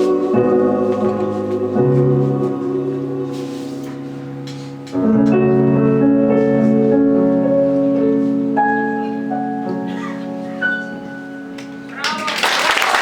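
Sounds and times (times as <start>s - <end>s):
keyboard chord: 0.0s - 11.9s.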